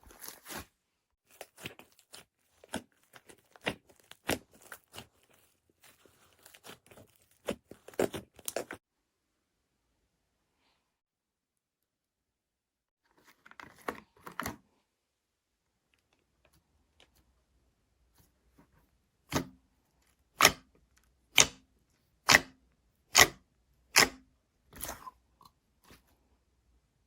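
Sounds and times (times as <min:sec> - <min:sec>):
soft crackles: 0:00.0 - 0:08.8.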